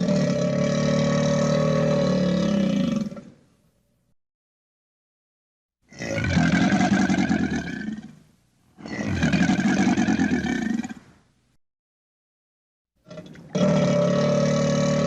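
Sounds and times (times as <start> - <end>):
crocodile growling low: 0.0 - 3.3, 13.1 - 15.0.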